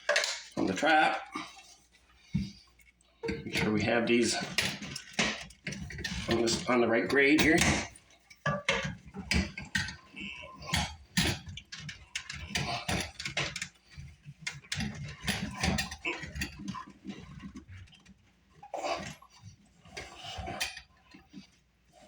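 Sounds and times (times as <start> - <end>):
plastic pipe fittings clicking: 0.0 - 0.9.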